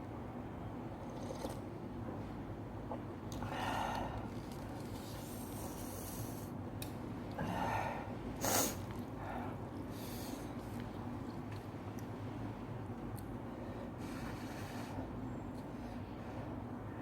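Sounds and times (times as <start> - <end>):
person sniffing: 8.4 - 8.8.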